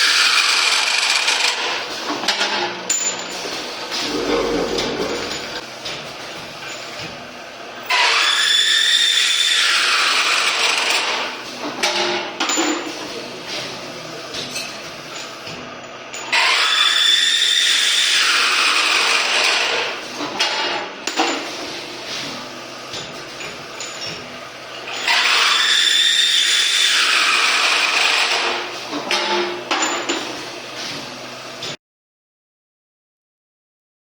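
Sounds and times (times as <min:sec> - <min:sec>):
chamfering machine cutting metal: 0:00.0 - 0:02.5, 0:07.9 - 0:11.4, 0:16.2 - 0:21.5, 0:24.8 - 0:30.1
high steady machine whine: 0:02.8 - 0:09.0
metal tubes knocking and clattering: 0:28.9 - 0:30.3.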